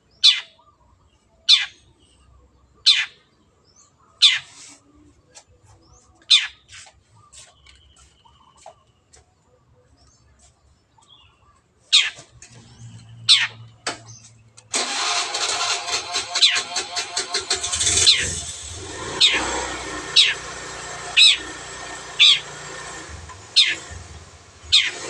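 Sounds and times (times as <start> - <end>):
bird giving harsh calls: 0.2 - 0.6, 1.5 - 1.8, 2.8 - 3.2, 4.2 - 4.8, 11.9 - 12.2, 13.1 - 13.6, 14.8 - 22.6, 23.4 - 25.0.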